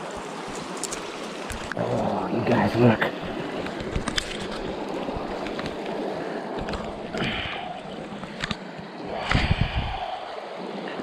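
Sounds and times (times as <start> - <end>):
mountain creek running: 0.0 - 11.0.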